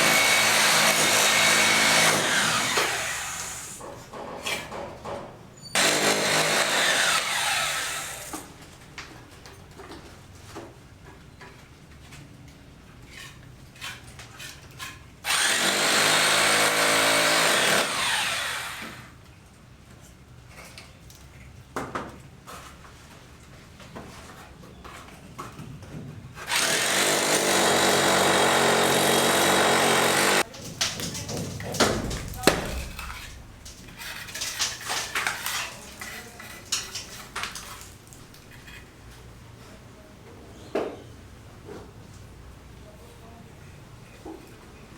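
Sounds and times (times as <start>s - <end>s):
power tool motor running: 15.3s - 19.1s, 26.5s - 30.4s
hard objects clinking: 30.3s - 38.9s
light scattered knocks: 30.4s - 38.9s.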